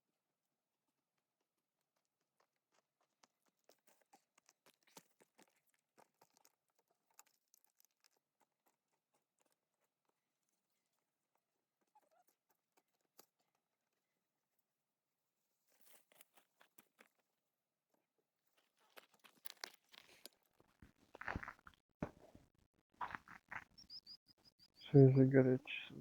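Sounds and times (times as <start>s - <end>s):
faint small clicks and taps: 1.8s - 13.8s, 18.5s - 22.4s.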